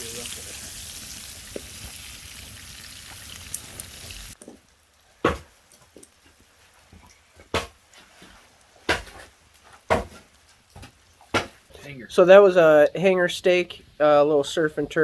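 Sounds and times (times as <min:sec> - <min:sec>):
steak sizzling in a pan: 0:00.0 - 0:05.0.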